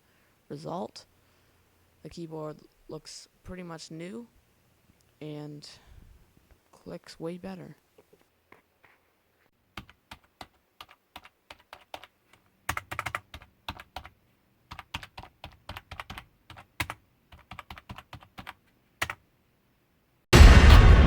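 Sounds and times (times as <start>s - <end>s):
keyboard keys clicking: 9.8s - 14.1s, 14.7s - 19.2s.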